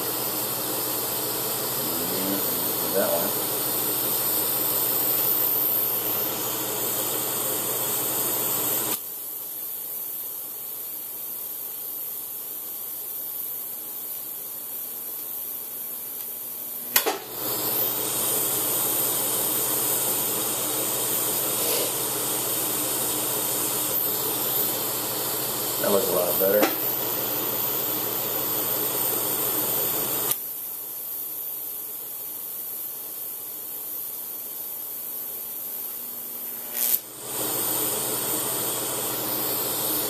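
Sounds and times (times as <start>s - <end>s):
welding arc hissing: 0.0s - 40.0s
welding arc striking crack: 16.1s - 20.3s, 25.8s - 27.2s, 35.8s - 40.0s.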